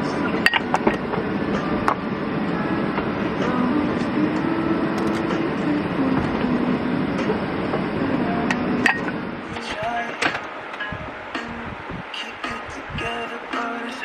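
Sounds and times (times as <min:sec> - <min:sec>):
dishes clinking: 0:00.4 - 0:01.0, 0:08.5 - 0:09.2.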